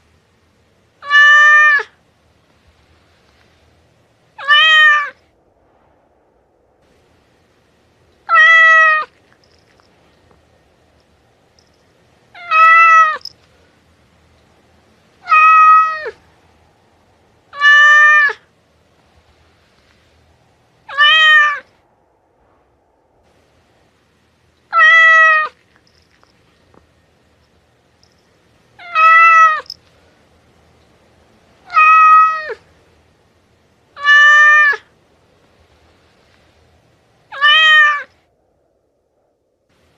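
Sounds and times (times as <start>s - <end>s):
cat meowing: 1.0s - 2.0s, 4.4s - 5.2s, 8.2s - 9.2s, 12.4s - 13.3s, 15.2s - 16.2s, 17.5s - 18.4s, 20.9s - 21.7s, 24.7s - 25.6s, 28.8s - 29.8s, 31.6s - 32.7s, 34.0s - 34.9s, 37.3s - 38.1s.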